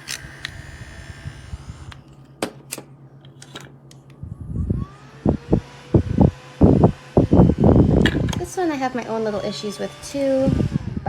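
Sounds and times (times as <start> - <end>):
electric fan humming: 0.0 - 11.0
low rumble: 4.1 - 8.7.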